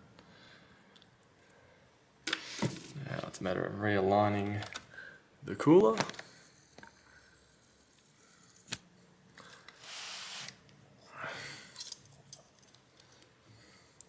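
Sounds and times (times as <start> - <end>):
short scraping rubs: 9.8 - 10.6.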